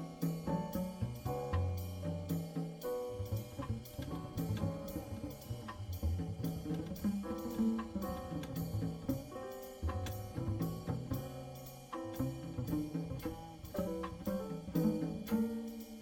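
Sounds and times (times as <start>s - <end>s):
bass line: 0.0s - 15.4s
drum kit beat: 0.0s - 16.0s
hi-hat cymbal strokes: 0.0s - 16.0s.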